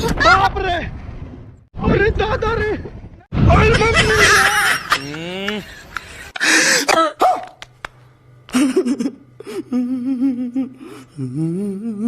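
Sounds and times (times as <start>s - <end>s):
man wailing: 3.9s - 5.8s
man groaning: 4.9s - 5.8s.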